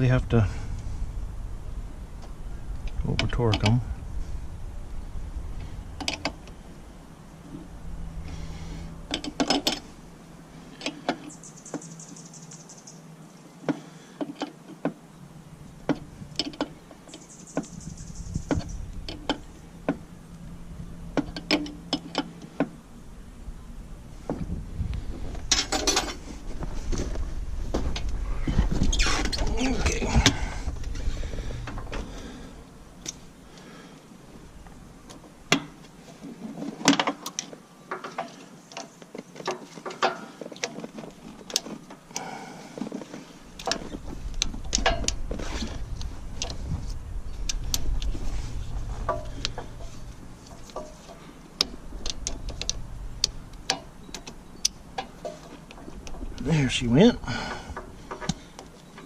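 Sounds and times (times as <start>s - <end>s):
clattering handling noise: 9.0s - 10.0s, 24.2s - 33.2s, 34.6s - 56.4s.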